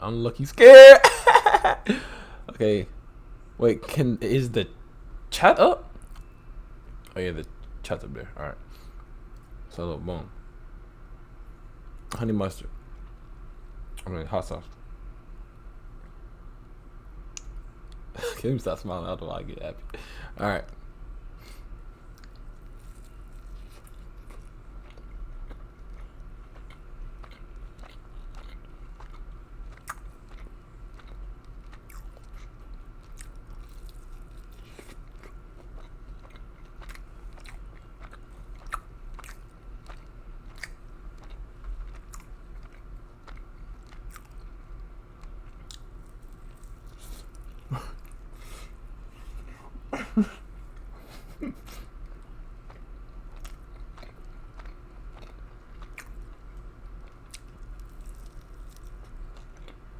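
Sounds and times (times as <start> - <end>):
faint electrical hum: 0.0 - 59.9
chewing and crunching chicken: 5.9 - 7.8, 11.4 - 15.0, 17.3 - 59.9.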